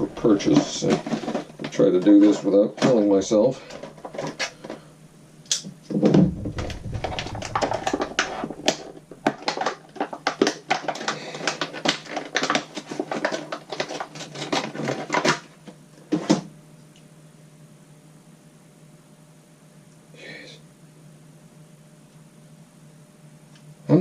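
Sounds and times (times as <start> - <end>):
plastic packaging crackling: 6.4 - 15.5.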